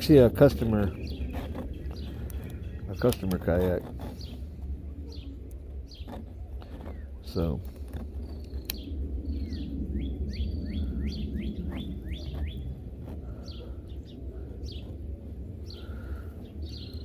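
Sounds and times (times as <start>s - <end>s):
low background rumble: 0.0s - 17.0s
songbird chirping: 0.4s - 12.8s.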